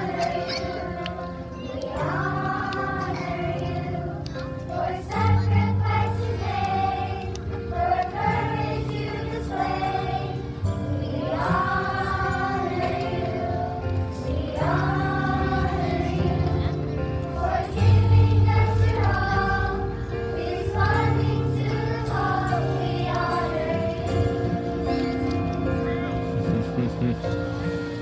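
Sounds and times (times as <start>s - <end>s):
choir singing slow song: 0.0s - 28.0s
instrumental accompaniment: 21.8s - 28.0s.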